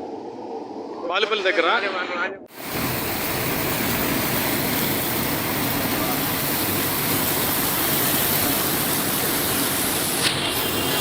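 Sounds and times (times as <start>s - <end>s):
rushing floodwater: 2.6s - 11.0s.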